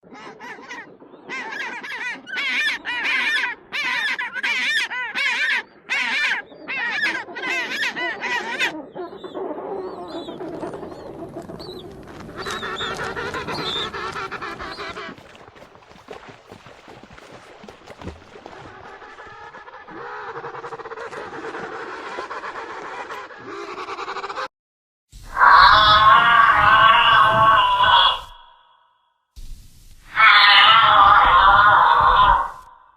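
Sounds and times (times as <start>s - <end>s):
penguins calling: 1.9s - 15.2s, 25.3s - 28.5s, 30.1s - 32.7s.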